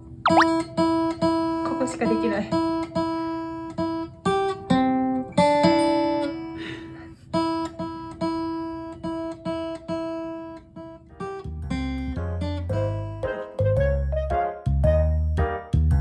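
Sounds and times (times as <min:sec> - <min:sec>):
acoustic guitar slow melody: 0:00.0 - 0:14.7.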